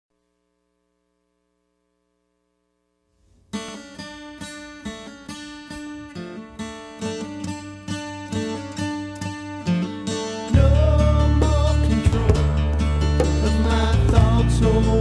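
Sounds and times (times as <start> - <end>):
acoustic guitar plucked and strummed: 3.1 - 15.0.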